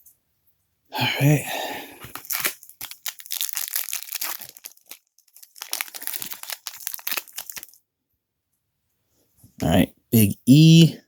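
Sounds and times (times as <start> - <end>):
plastic wrapper tearing and crinkling: 2.0 - 7.8.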